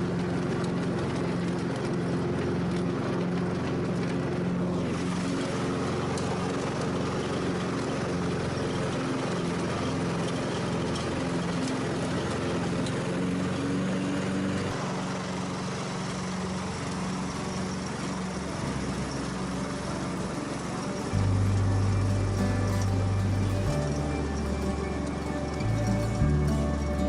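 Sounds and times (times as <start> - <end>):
lawn tractor engine running: 0.0 - 27.0
steady low sound: 20.2 - 27.0.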